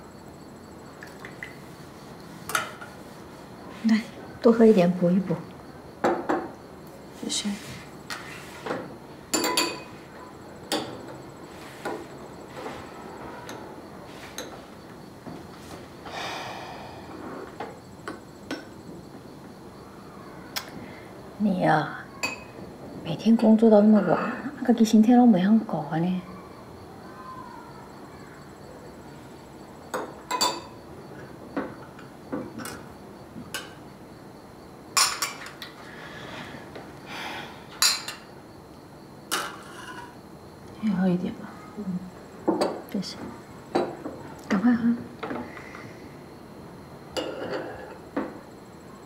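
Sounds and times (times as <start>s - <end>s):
tableware clinking: 9.3s - 10.0s, 22.2s - 22.6s, 29.9s - 30.8s, 35.0s - 35.6s, 37.8s - 38.3s, 47.2s - 48.0s.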